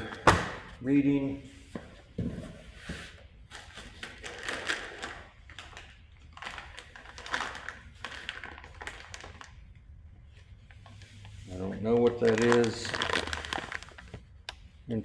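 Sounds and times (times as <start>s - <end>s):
packaging rustling: 3.5s - 9.8s, 11.8s - 14.4s.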